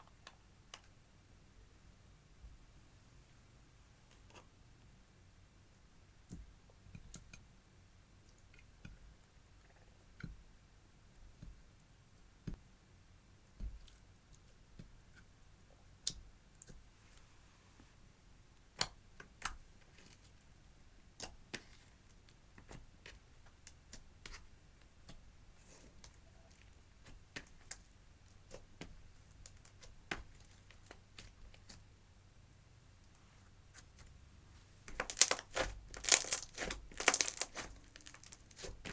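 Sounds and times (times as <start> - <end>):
slime clicking and popping: 34.9 - 38.9.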